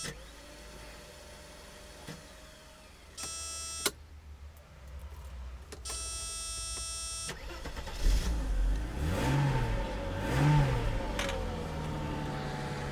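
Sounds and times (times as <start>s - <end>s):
car engine cranking and revving: 7.3s - 12.9s.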